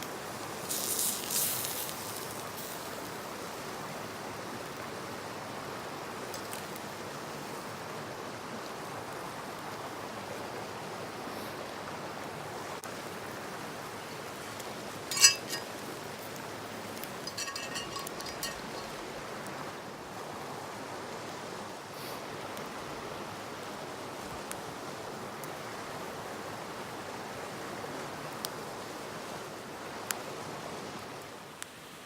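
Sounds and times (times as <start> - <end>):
river flowing: 0.0 - 29.7
sharp clink with ring: 15.1 - 15.7, 17.3 - 18.9.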